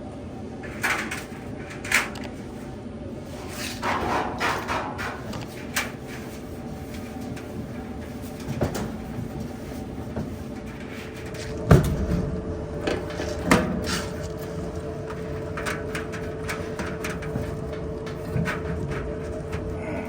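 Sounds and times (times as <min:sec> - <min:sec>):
clothes dryer humming: 0:00.0 - 0:20.0
knocks and clunks: 0:10.1 - 0:19.9.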